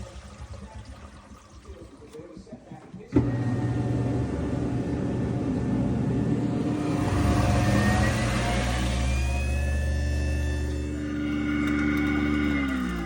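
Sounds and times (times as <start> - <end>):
motor running with rising whine: 3.3 - 13.0.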